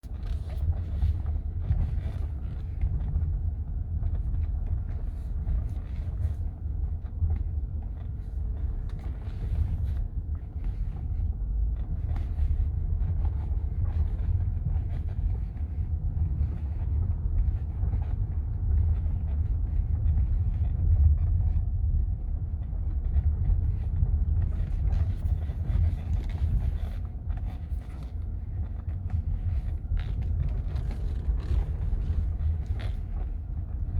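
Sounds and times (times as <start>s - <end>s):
car low rumble: 0.0s - 33.9s
suspension creaks: 30.0s - 33.4s.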